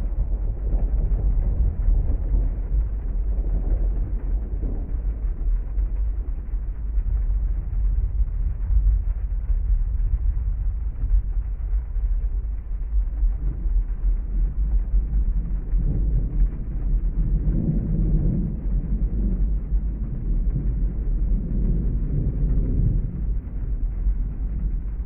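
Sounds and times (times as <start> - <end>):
heavy rain: 0.0 - 25.0
thunder rolling: 0.0 - 25.0.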